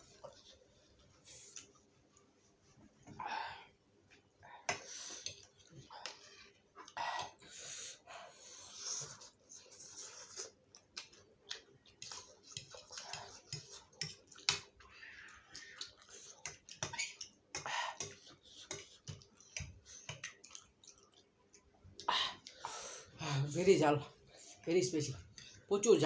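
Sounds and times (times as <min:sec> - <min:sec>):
chewing and wet mouth noises: 0:00.1 - 0:02.4, 0:08.6 - 0:22.7.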